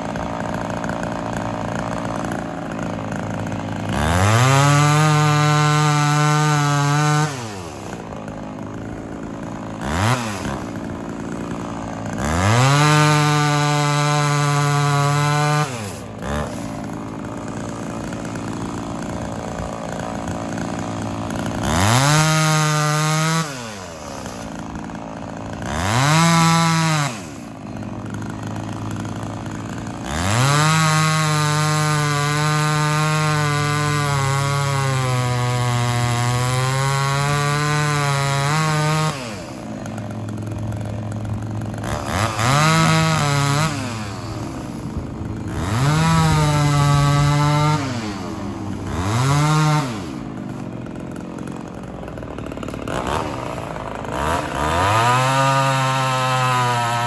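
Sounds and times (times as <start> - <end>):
chainsaw revving: 0.0 - 57.0.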